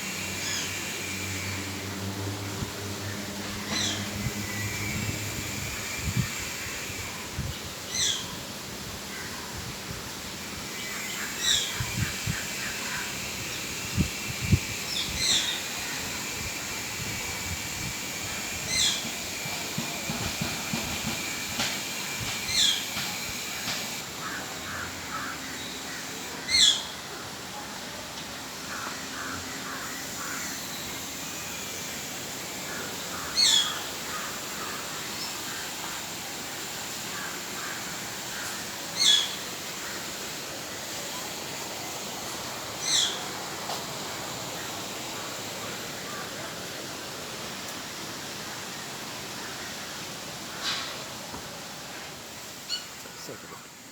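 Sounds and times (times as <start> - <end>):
steady background hiss: 0.0 - 53.9.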